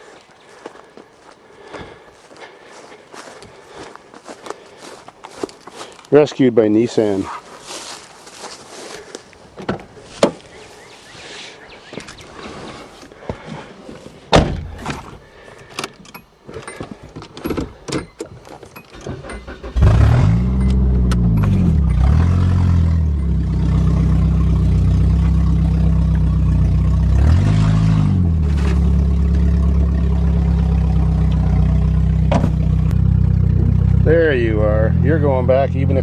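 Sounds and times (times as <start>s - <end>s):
car engine starting and revving: 18.9s - 36.0s
car engine idling: 19.0s - 36.0s.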